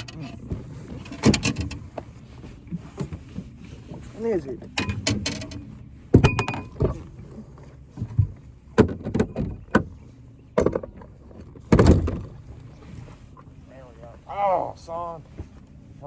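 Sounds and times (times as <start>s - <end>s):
knocks and clunks in a boat: 0.0s - 16.0s.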